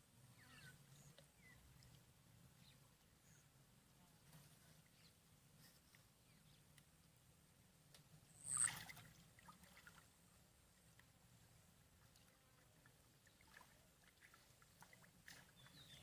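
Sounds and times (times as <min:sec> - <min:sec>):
faint water drips: 0:00.6 - 0:03.6, 0:04.2 - 0:16.0
water splash: 0:08.5 - 0:10.0.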